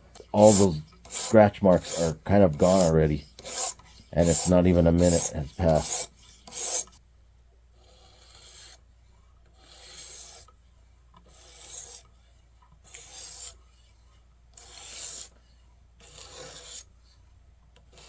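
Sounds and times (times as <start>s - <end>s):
knife scraping on sharpening stone: 0.2s - 7.0s, 9.6s - 10.5s, 11.3s - 12.0s, 12.9s - 13.6s, 14.6s - 15.3s, 16.0s - 16.9s.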